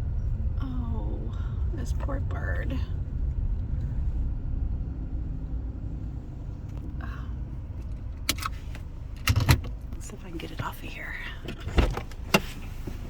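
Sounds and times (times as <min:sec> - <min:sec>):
car engine rumble from inside: 0:00.0 - 0:13.0.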